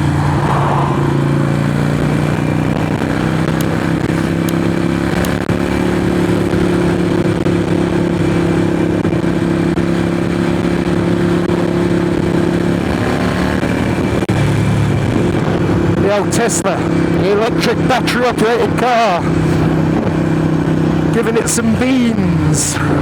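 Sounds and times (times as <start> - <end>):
wind rushing past: 0.0 - 3.0
motorcycle engine cruising: 0.0 - 23.0.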